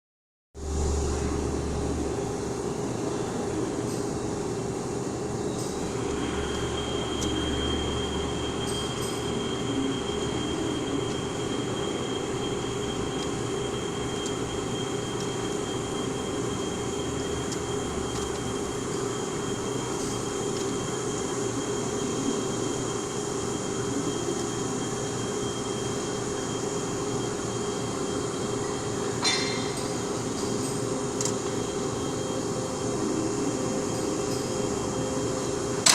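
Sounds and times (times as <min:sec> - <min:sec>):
high steady whine: 0:00.6 - 0:35.9
lathe mechanical drone: 0:00.6 - 0:35.9.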